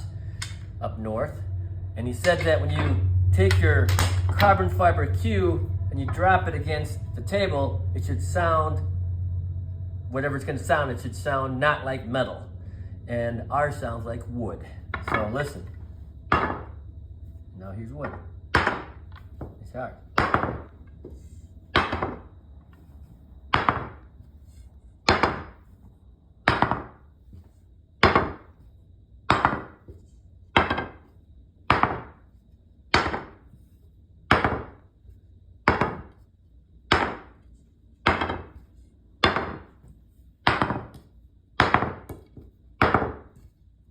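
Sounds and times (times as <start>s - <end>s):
pool cues knocking on table: 20.2s - 20.7s, 34.3s - 34.8s, 35.7s - 36.2s, 39.2s - 39.8s, 41.6s - 43.4s.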